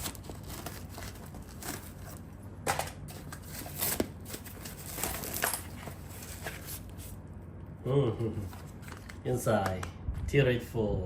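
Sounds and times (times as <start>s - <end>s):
plastic packaging crinkling: 0.0s - 2.3s.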